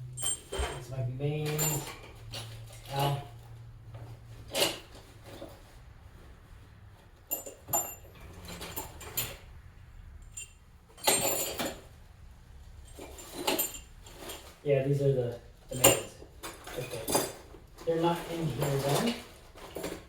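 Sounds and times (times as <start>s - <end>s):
steel bolts rattling in toolbox: 0.1s - 3.4s, 7.2s - 9.5s, 10.2s - 12.0s, 12.8s - 14.6s, 15.7s - 20.0s.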